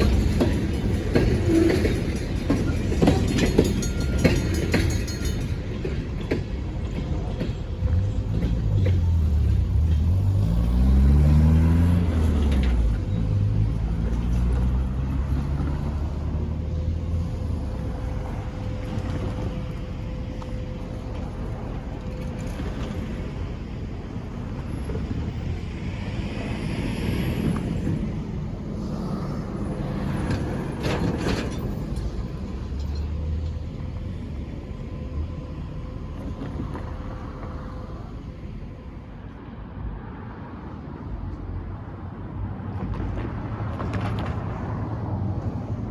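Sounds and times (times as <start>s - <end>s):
metallic clanks: 0.0s - 10.3s
diesel locomotive rumbling: 0.0s - 45.9s.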